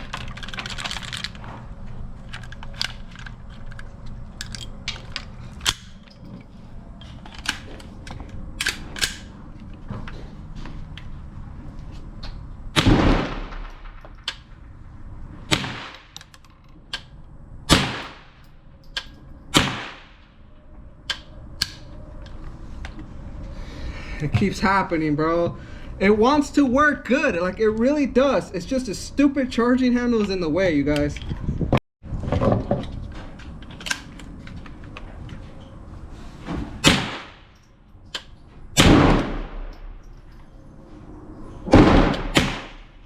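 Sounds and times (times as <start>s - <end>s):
metallic clicks of rifle handling: 0.0s - 1.5s, 2.2s - 9.4s, 15.9s - 17.4s, 18.4s - 19.3s
gunshots with echo: 12.8s - 14.0s, 41.7s - 42.9s.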